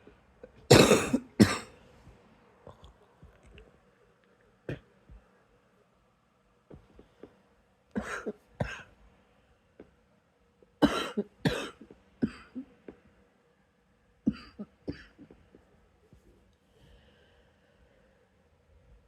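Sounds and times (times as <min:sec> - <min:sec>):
person coughing: 0:00.6 - 0:01.8, 0:08.0 - 0:08.9, 0:10.8 - 0:12.7, 0:14.3 - 0:15.4.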